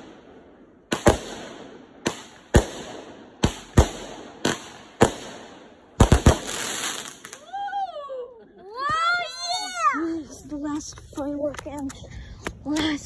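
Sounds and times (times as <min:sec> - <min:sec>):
fireworks bangs: 0:00.0 - 0:07.5.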